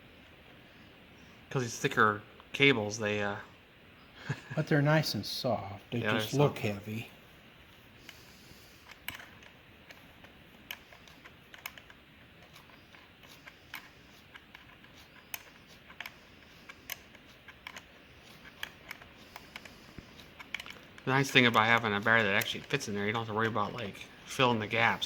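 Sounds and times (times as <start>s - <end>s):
light clicks and taps: 8.8s - 24.9s.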